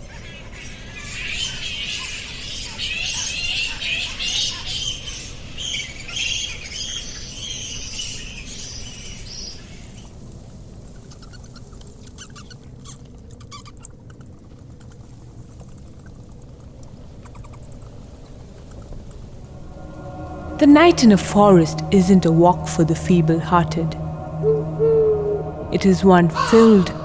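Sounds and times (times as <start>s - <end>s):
fast high echolocation clicks: 9.9s - 19.5s.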